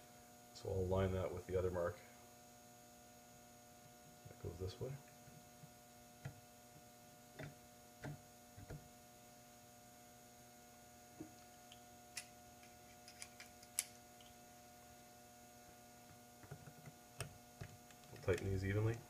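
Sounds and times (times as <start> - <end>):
electrical hum: 0.0 - 19.0
small parts clicking and tapping: 11.7 - 14.4, 16.4 - 18.6.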